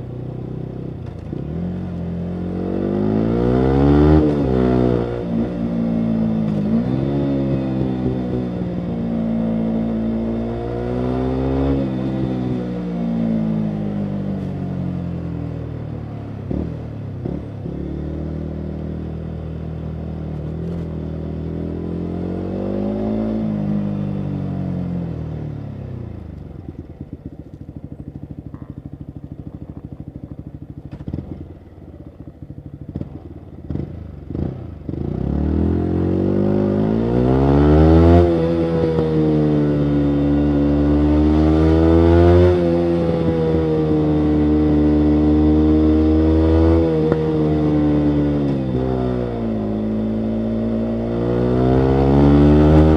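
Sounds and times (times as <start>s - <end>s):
motorcycle engine revving: 0.0s - 52.9s.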